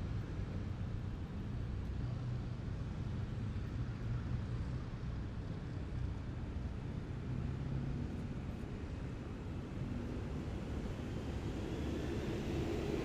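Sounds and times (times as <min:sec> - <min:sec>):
heavy vehicle engines droning: 0:05.8 - 0:13.0.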